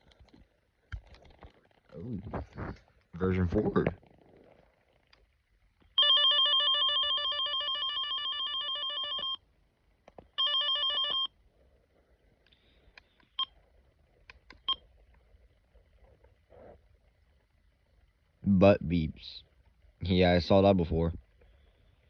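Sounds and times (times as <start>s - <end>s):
warbling electronic alarm tone: 6.0s - 9.4s.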